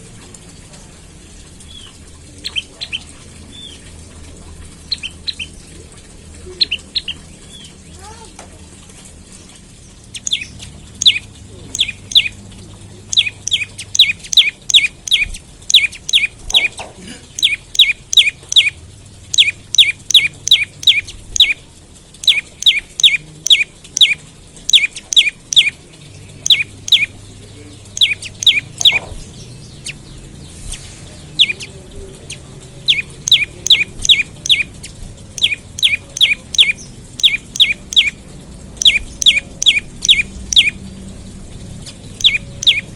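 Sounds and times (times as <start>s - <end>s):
bird chirping song: 1.6s - 8.3s, 9.5s - 42.9s.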